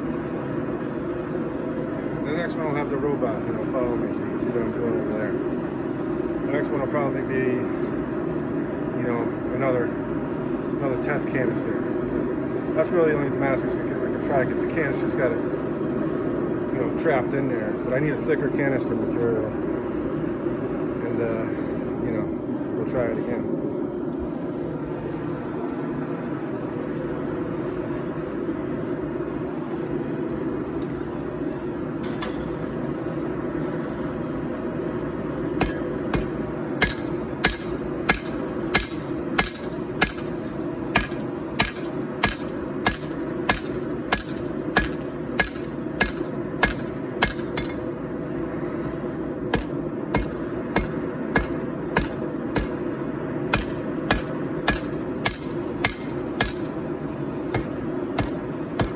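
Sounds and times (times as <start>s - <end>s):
hammer striking steel on anvil: 35.6s - 47.9s, 49.5s - 52.8s, 53.5s - 56.8s, 57.5s - 58.9s.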